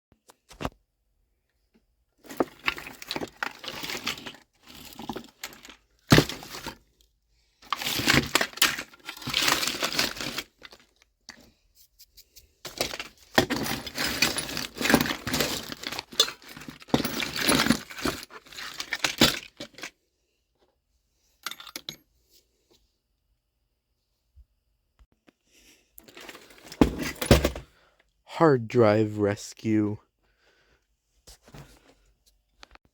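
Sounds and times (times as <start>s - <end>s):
rattling crinkling handling noises: 2.2s - 7.0s, 7.6s - 20.0s, 26.0s - 27.8s.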